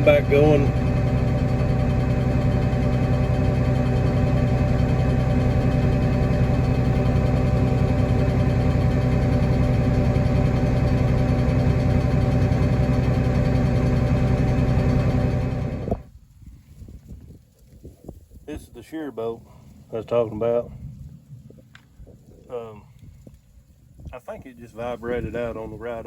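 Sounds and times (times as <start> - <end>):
tractor engine humming: 0.0 - 16.1.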